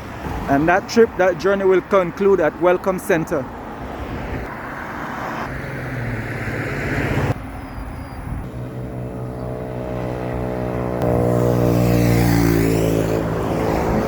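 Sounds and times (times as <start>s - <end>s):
road noise: 0.0s - 14.0s
car engine: 8.4s - 14.0s.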